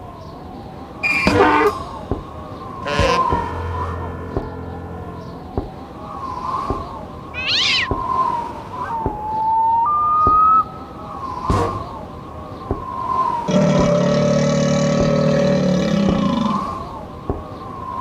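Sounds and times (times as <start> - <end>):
whistle-like notes: 0.6 - 14.1, 15.0 - 18.0
quick high chirp: 2.7 - 12.1
wavering cat-like cry: 7.4 - 8.0.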